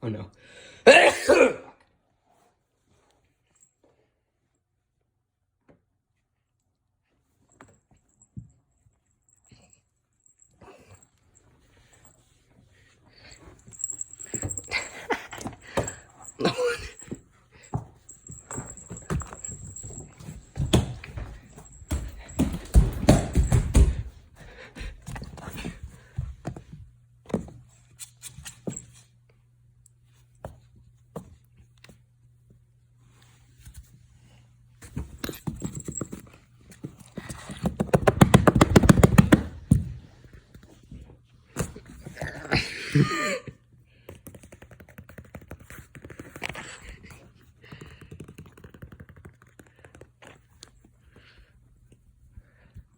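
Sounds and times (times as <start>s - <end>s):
pet sneezing: 0.9s - 1.8s.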